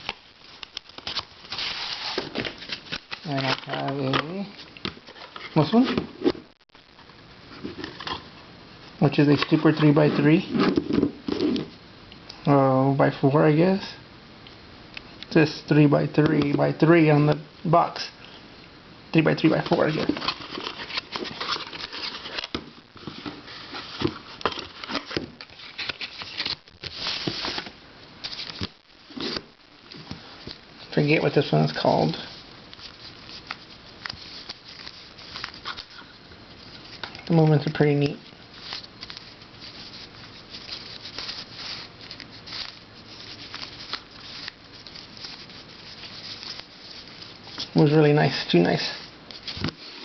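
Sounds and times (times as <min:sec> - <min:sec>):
box rustling in hands: 0:00.0 - 0:06.5, 0:07.5 - 0:08.4, 0:19.2 - 0:50.0.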